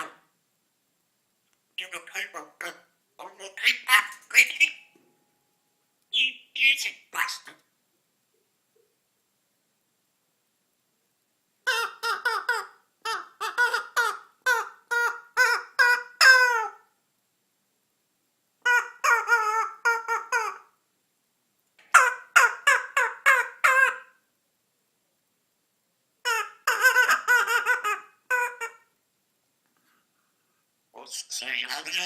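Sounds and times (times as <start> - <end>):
parrot calling: 0.0 - 0.3, 1.8 - 4.9, 6.1 - 7.7, 11.6 - 16.9, 18.6 - 20.8, 21.8 - 24.2, 26.2 - 28.9, 31.0 - 32.0.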